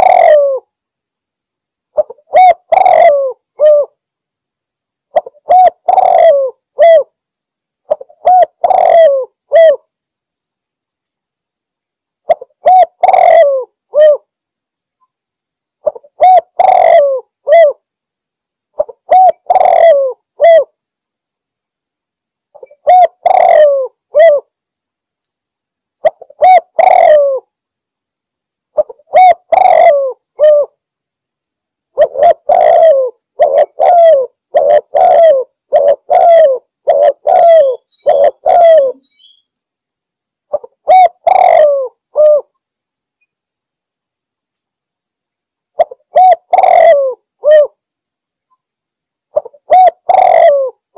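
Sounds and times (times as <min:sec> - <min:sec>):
dove cooing: 0:00.0 - 0:00.7, 0:01.9 - 0:04.0, 0:05.1 - 0:07.1, 0:07.9 - 0:09.8, 0:12.3 - 0:14.3, 0:15.8 - 0:17.8, 0:18.8 - 0:20.7, 0:22.6 - 0:24.5, 0:26.0 - 0:27.5, 0:28.8 - 0:30.8, 0:32.0 - 0:39.4, 0:40.5 - 0:42.5, 0:45.8 - 0:47.8, 0:49.3 - 0:50.8.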